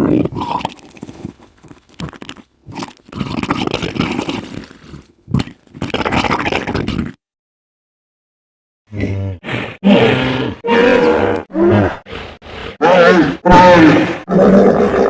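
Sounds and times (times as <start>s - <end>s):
raspy creature growling: 8.9s - 15.0s.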